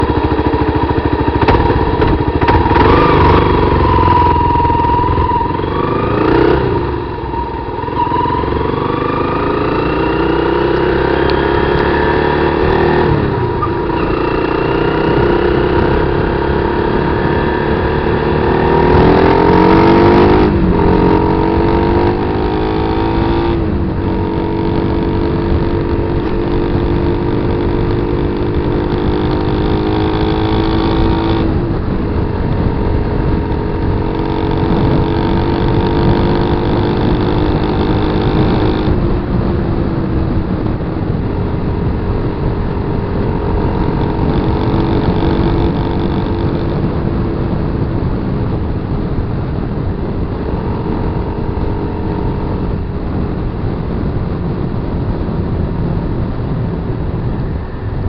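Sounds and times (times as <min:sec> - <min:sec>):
dirt bike engine revving and shifting: 0:00.0 - 0:39.2, 0:42.8 - 0:47.1.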